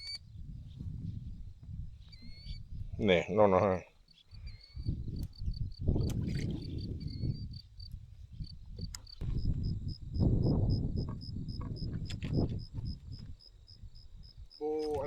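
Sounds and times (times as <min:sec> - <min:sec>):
crickets chirping: 0:00.0 - 0:15.0
low rumbling microphone noise: 0:04.8 - 0:14.4.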